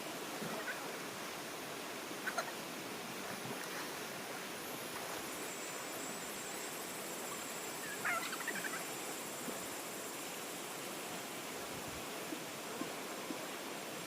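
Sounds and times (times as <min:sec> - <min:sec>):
running water rushing: 0:00.0 - 0:14.0
bird calls: 0:07.8 - 0:08.8.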